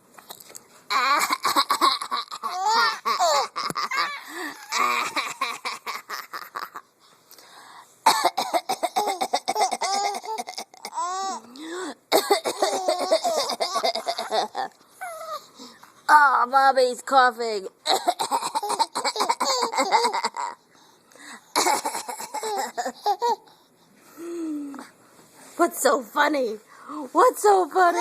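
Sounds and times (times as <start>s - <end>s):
child giggling: 0.9s - 6.9s, 12.2s - 14.8s
woman coughing: 8.0s - 11.0s, 12.1s - 13.4s, 17.9s - 19.9s, 21.6s - 22.9s.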